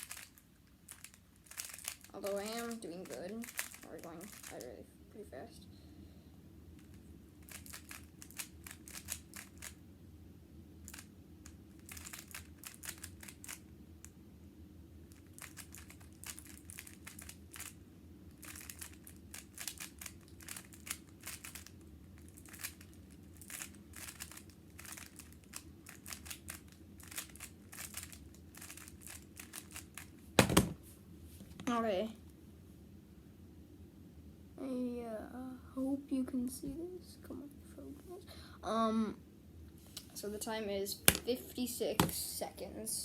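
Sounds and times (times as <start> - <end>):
puzzle cube clicking: 7.5 - 9.8.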